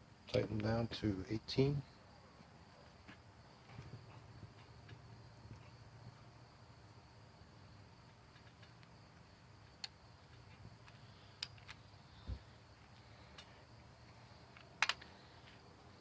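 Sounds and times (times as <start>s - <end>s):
hand tools clicking and tapping: 9.7s - 11.8s, 12.9s - 15.6s.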